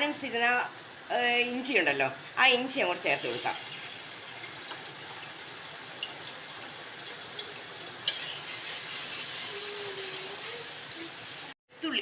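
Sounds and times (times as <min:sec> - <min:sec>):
ginger sizzling in hot oil: 0:02.8 - 0:11.6.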